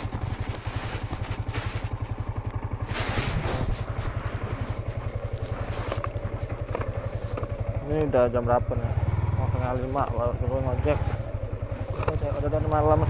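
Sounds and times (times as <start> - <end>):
motorcycle engine idling: 0.0 - 13.0
brief scraping noises: 2.8 - 4.6.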